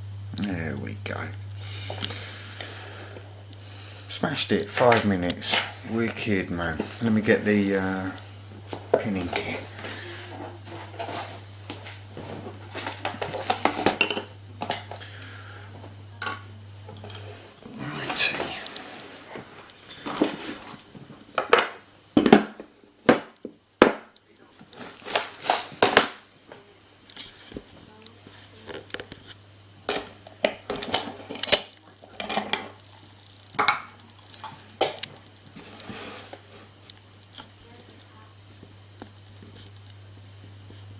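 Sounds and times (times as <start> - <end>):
low steady hum: 0.0 - 40.9
metal tools clinking: 30.4 - 32.6.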